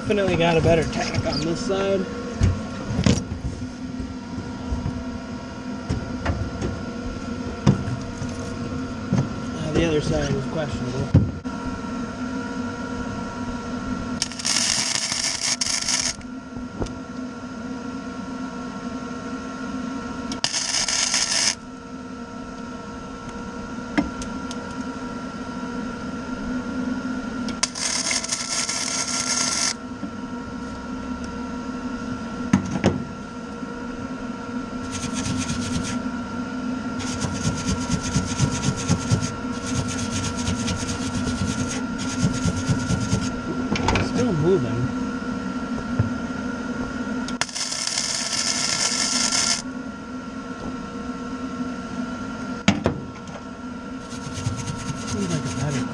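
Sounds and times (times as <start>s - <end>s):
steady hum: 0.0s - 55.9s
arc welder crackling: 14.2s - 16.3s, 20.3s - 21.7s, 27.5s - 29.8s, 34.8s - 36.0s, 37.0s - 43.4s, 47.3s - 49.7s.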